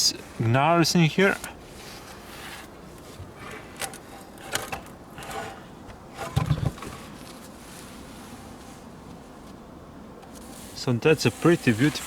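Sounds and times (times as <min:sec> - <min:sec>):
wooden board knocking and scraping: 0:06.2 - 0:07.1.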